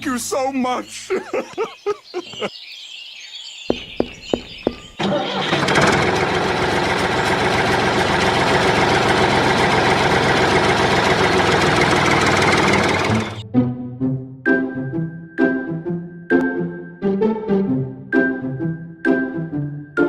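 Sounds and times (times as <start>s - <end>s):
engine running: 5.0s - 13.4s.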